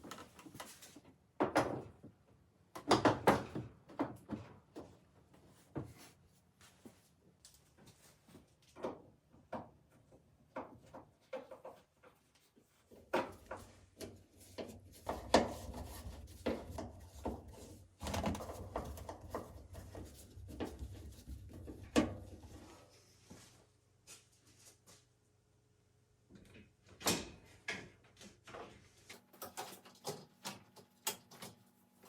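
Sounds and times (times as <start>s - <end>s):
panels and parts clicking: 7.4s - 22.6s, 26.3s - 32.0s.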